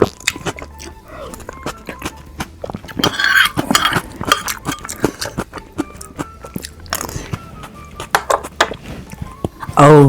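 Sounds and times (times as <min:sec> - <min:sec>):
utensils clinking on dish: 0:03.0 - 0:05.4.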